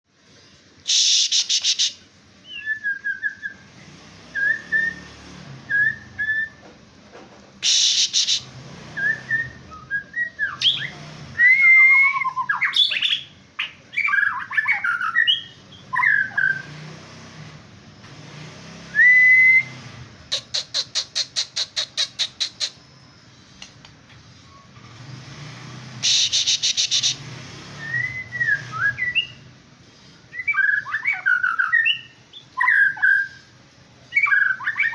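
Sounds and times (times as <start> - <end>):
harsh buzzy bird calls: 0.8 - 2.1, 7.6 - 9.3, 19.6 - 24.7, 25.7 - 33.5
bird singing whistled phrases: 0.9 - 3.6, 5.7 - 6.6, 9.0 - 16.6, 27.8 - 29.5, 30.3 - 33.5, 34.1 - 34.9.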